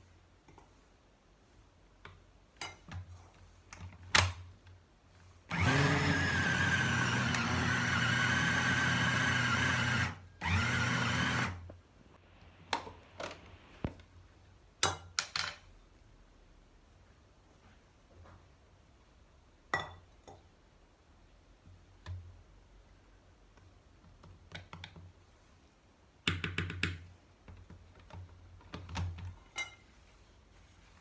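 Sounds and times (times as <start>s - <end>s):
electric kitchen grinder running: 5.5s - 11.6s.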